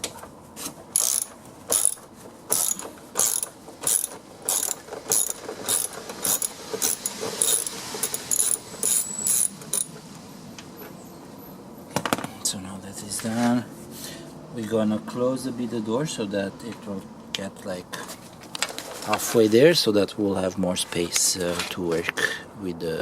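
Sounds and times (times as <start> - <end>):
ratchet wrench clicking: 1.0 - 9.9.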